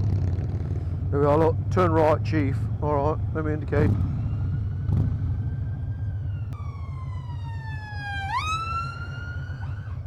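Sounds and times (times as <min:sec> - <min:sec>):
motorcycle engine rumbling: 0:00.0 - 0:08.0
wailing siren tone: 0:04.0 - 0:10.0.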